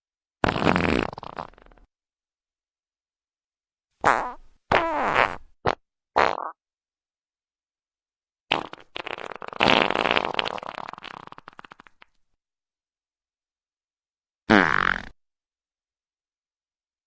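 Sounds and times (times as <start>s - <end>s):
farts: 0.4s - 1.9s, 4.0s - 6.6s, 8.5s - 12.2s, 14.5s - 15.2s.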